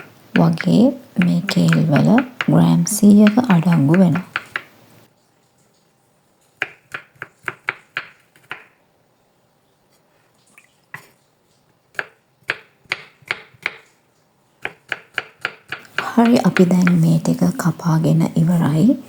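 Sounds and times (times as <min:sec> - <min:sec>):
knife chopping on cutting board: 0:00.4 - 0:04.7, 0:06.6 - 0:08.7, 0:14.6 - 0:17.0.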